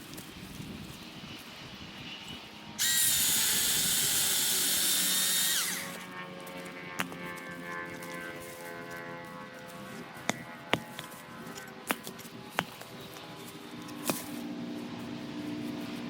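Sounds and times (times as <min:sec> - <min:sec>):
battery chainsaw whining: 0:02.8 - 0:06.7.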